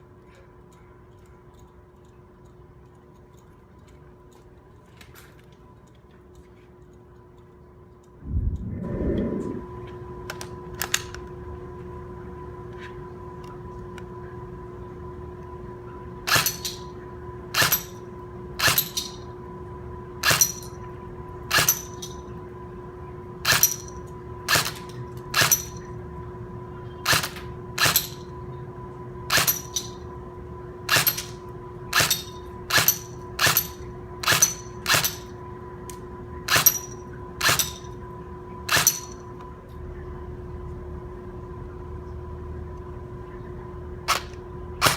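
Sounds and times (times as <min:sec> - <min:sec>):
steady low hum: 0:00.0 - 0:44.9
airsoft gun shots: 0:44.1 - 0:44.9.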